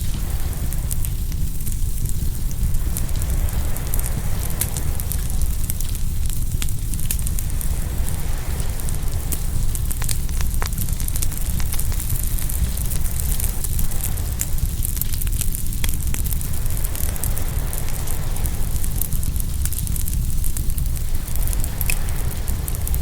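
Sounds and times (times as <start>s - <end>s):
ocean waves rumbling: 0.0s - 23.0s
wood fire crackling and popping: 0.0s - 23.0s.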